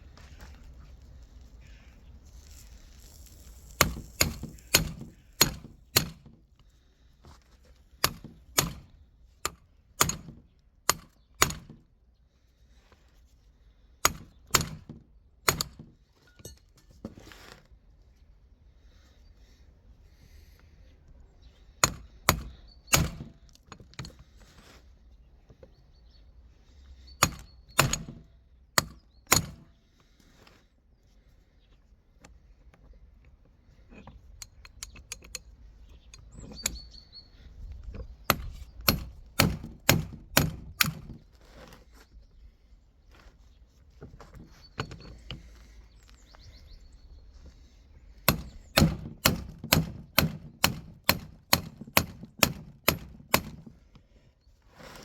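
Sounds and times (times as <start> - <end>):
hammer knocking on metal parts: 3.9 - 6.4, 27.2 - 28.2, 38.3 - 41.1, 48.3 - 53.6.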